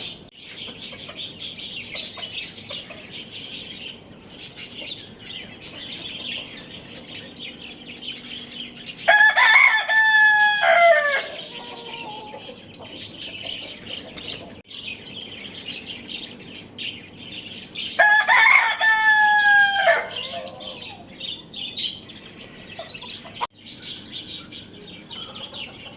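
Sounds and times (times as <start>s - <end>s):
small birds chirping: 0.0s - 25.9s
rooster crowing: 9.0s - 12.6s, 18.0s - 21.1s.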